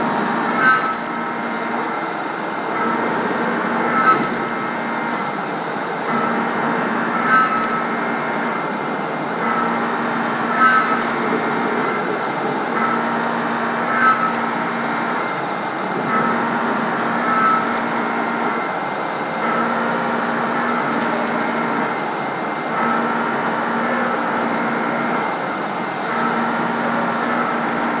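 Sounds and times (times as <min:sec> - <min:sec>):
milling machine humming: 0:00.0 - 0:28.0
machine sharp clicks: 0:00.6 - 0:01.3, 0:02.8 - 0:05.4, 0:07.1 - 0:08.2, 0:10.4 - 0:13.1, 0:13.8 - 0:15.2, 0:17.1 - 0:18.5, 0:19.5 - 0:22.0, 0:23.9 - 0:25.0, 0:27.2 - 0:28.0.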